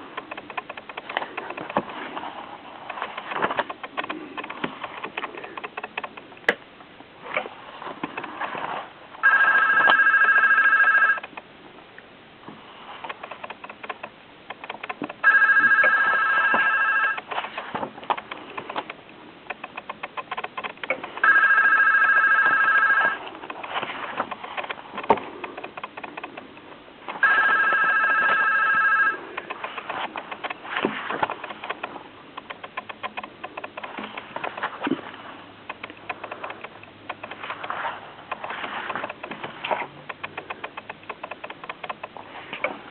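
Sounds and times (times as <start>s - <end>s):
handling clicks and rustles: 0.0s - 42.9s
telephone ringing: 9.2s - 11.3s, 15.2s - 17.3s, 21.2s - 23.3s, 27.2s - 29.5s.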